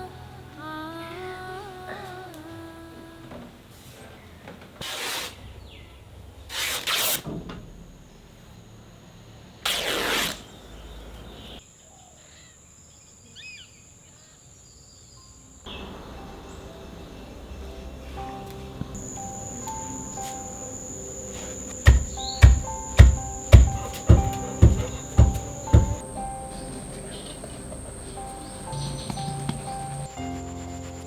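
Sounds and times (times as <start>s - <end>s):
faint bird chirps: 19.0s - 30.1s
loud hissing bursts: 19.0s - 30.1s
high insect whine: 19.0s - 31.0s.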